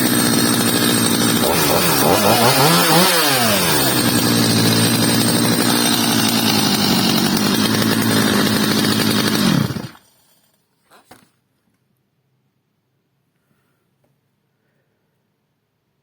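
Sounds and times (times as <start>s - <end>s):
chainsaw idling and stopping: 0.0s - 10.4s.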